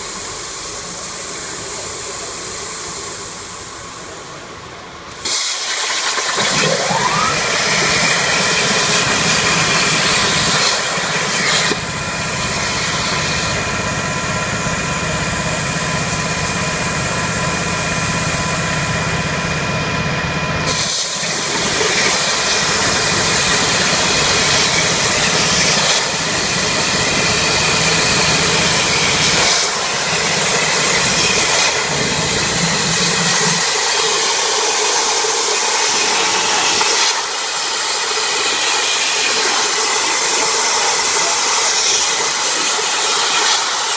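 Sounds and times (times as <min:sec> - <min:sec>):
plasma torch cutting metal: 0:05.1 - 0:15.5, 0:20.6 - 0:43.9.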